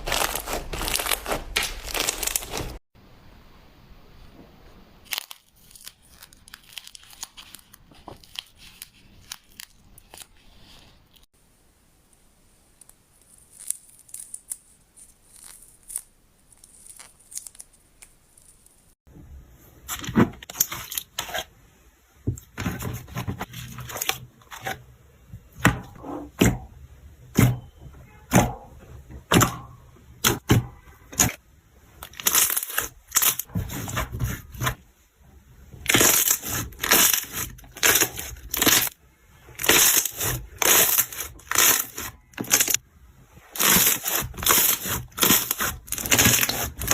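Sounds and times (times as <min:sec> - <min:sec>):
slime crackling and popping: 0:00.0 - 0:02.8, 0:05.0 - 0:10.3, 0:32.0 - 0:34.7, 0:35.8 - 0:42.8, 0:43.6 - 0:46.9.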